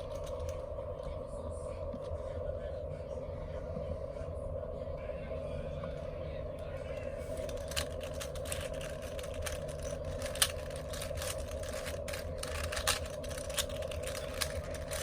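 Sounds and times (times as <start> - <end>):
background hum: 0.0 - 15.0
puzzle cube clicking: 7.4 - 15.0.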